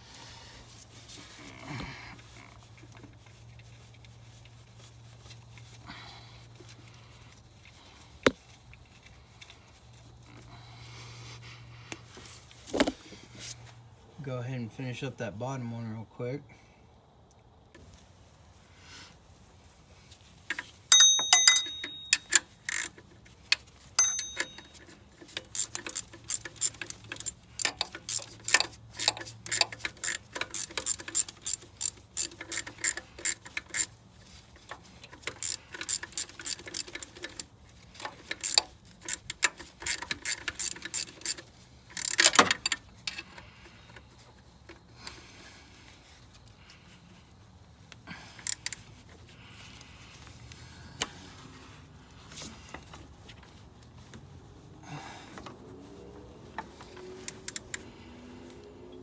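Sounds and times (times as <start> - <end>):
ratchet wrench clicking: 20.5 - 23.0, 24.0 - 34.0, 34.8 - 43.3, 48.4 - 48.8, 57.2 - 57.8
short metallic ring: 20.9 - 22.5, 24.0 - 25.0
metal clatter: 24.0 - 27.3.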